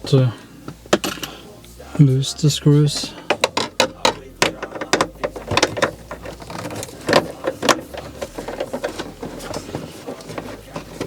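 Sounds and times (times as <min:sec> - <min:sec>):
plastic trim clicks and knocks: 0:03.3 - 0:09.1.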